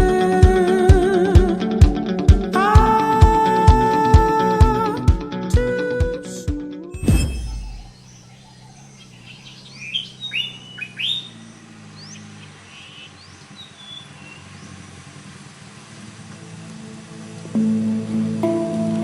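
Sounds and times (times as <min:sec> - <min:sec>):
birds chirping: 0:07.0 - 0:17.0.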